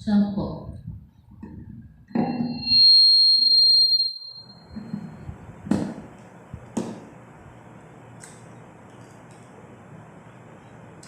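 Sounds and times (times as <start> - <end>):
high steady beep tone: 2.2 - 4.7
sharp knocks: 4.8 - 6.1, 6.8 - 7.1.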